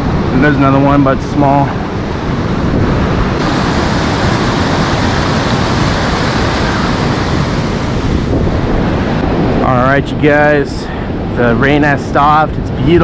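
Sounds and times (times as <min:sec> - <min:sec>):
ocean surf breaking: 0:01.3 - 0:09.6.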